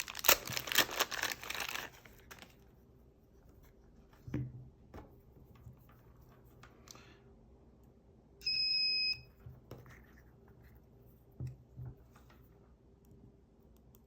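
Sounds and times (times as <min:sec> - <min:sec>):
plastic crinkling and rustling: 0:00.0 - 0:02.7.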